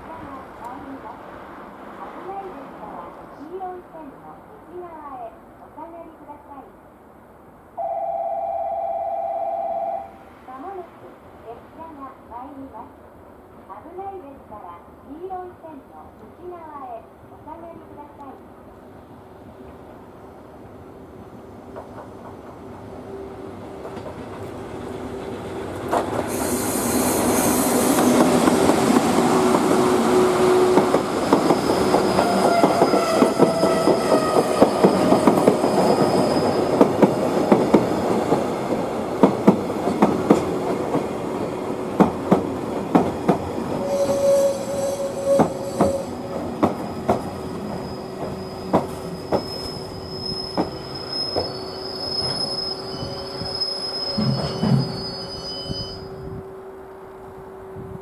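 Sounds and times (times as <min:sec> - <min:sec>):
freight train passing: 0:00.0 - 0:58.0
wheels clacking over rail joints: 0:23.6 - 0:26.4, 0:28.0 - 0:44.2
wheel squeal: 0:43.8 - 0:46.2, 0:46.9 - 0:56.3.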